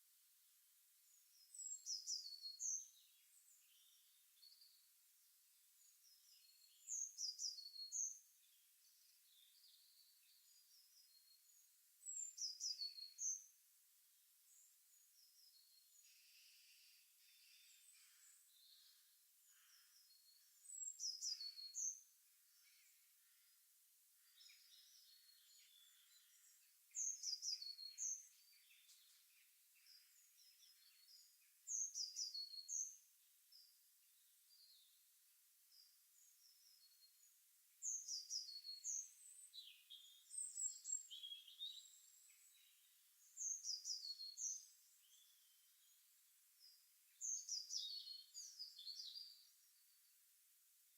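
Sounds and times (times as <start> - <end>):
soft bird chirps: 1.0 - 13.6, 14.4 - 35.1, 35.7 - 50.2.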